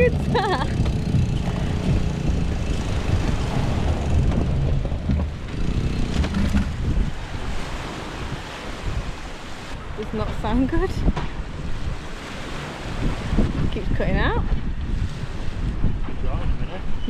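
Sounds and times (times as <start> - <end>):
boat engine running roughly: 0.0 - 7.2
surf: 0.0 - 17.0
wind noise: 0.0 - 17.0.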